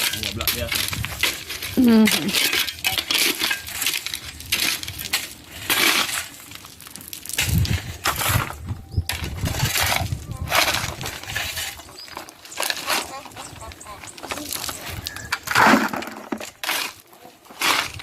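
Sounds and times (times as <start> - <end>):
gritty crunching and scraping: 0.0 - 18.0.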